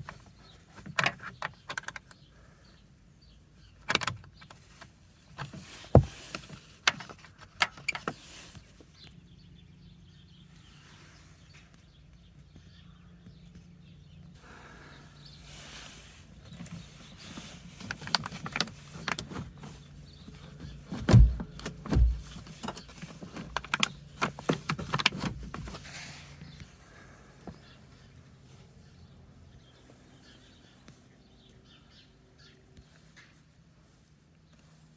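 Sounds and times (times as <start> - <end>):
clicks and rattles from handling parts: 0.0 - 2.3, 3.8 - 8.2, 16.5 - 25.9.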